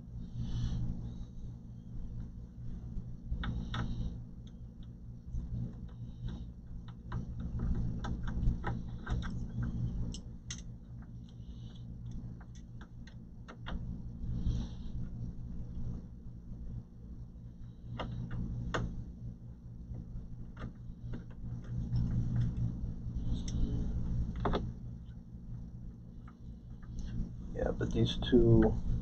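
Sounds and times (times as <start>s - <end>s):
low hum: 0.0s - 29.0s
small clicks and taps of hands: 5.7s - 13.8s.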